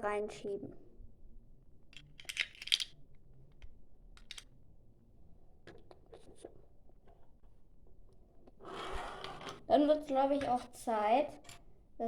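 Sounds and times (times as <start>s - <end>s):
plastic toy parts clicking: 1.9s - 3.0s, 4.2s - 4.5s.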